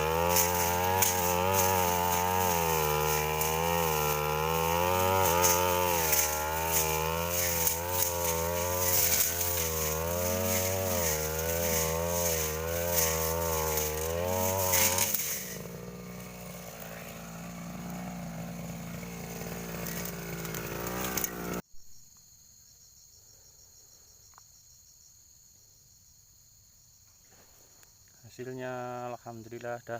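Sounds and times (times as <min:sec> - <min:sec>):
brushcutter engine running: 0:00.0 - 0:21.6
faint insects chirring: 0:00.3 - 0:29.9.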